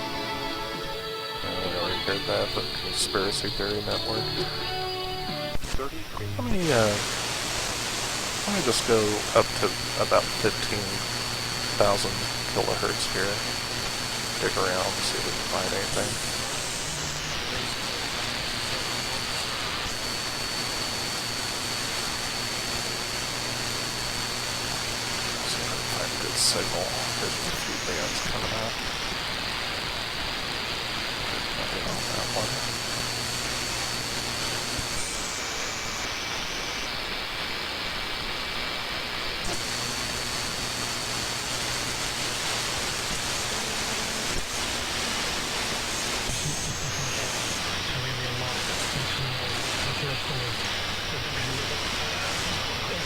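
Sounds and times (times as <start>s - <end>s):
radio static hiss: 0.0s - 53.0s.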